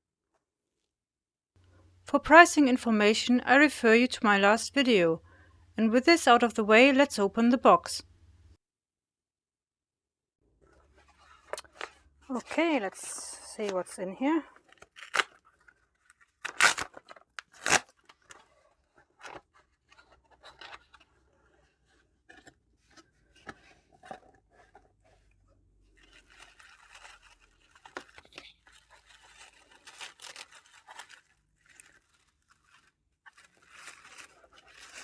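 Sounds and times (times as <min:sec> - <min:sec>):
small clicks and scrapes: 0:10.6 - 0:12.2, 0:14.5 - 0:35.0
cardboard tearing snaps: 0:15.0 - 0:15.3, 0:16.4 - 0:18.0
packaging crinkling: 0:16.4 - 0:17.9, 0:26.2 - 0:35.0.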